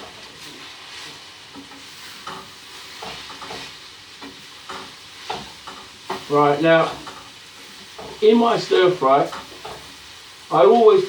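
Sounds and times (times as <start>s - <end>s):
utensil scraping a pan: 0.0s - 8.4s
vegetables sizzling in a pan: 0.0s - 11.0s.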